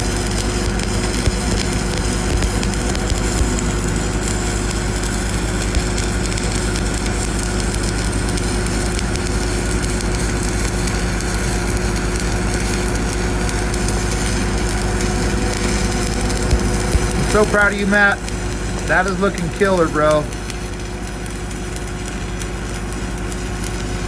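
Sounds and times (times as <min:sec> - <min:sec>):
engine running: 0:00.0 - 0:07.1
arc welding crackle: 0:00.0 - 0:24.0.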